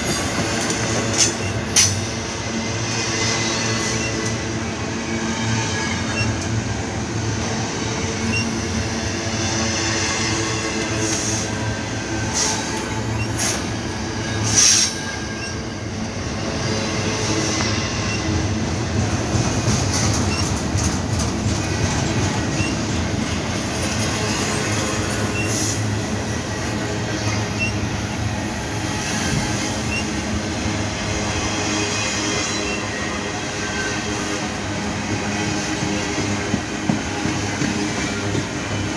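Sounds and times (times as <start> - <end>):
freight train rumbling: 0.0 - 38.9
wheels squealing: 7.2 - 34.5.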